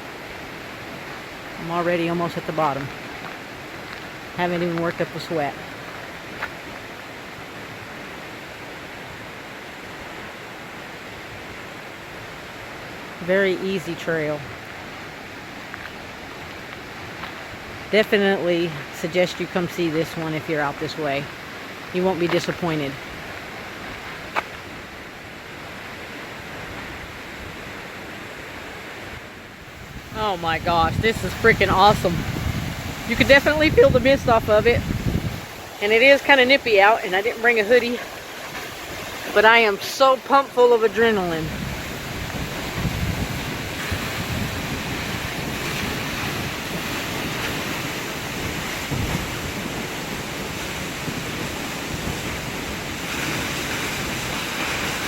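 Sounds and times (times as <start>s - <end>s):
waterfall roaring: 0.0s - 55.0s
wind buffeting microphone: 29.2s - 40.1s, 40.7s - 55.0s.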